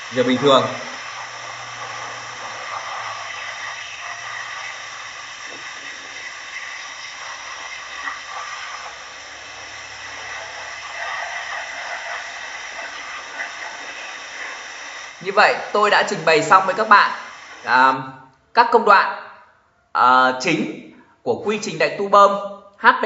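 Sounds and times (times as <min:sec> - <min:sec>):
spray gun hissing: 0:00.0 - 0:18.0.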